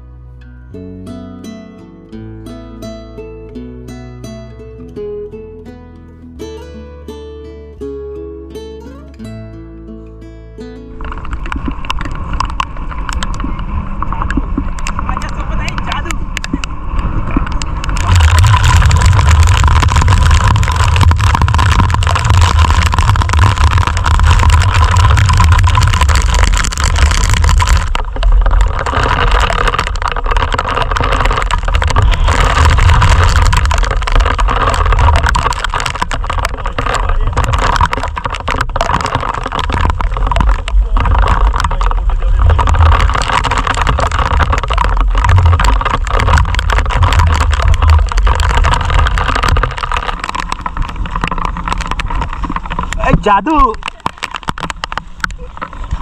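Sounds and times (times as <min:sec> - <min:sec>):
wind buffeting microphone: 0:11.0 - 0:53.3.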